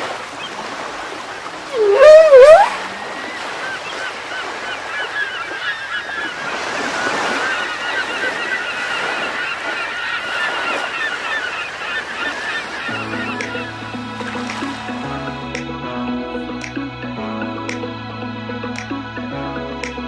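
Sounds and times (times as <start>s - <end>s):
flock of birds calling: 0.3s - 13.9s.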